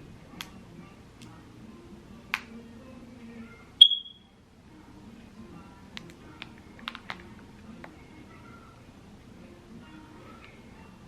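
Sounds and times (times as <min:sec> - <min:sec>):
short high-pitched ping: 0:03.8 - 0:04.2.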